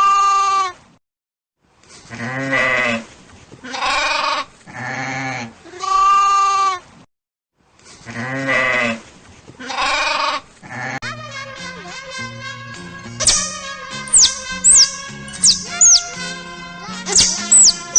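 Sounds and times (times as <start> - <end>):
music: 11.0 - 17.9.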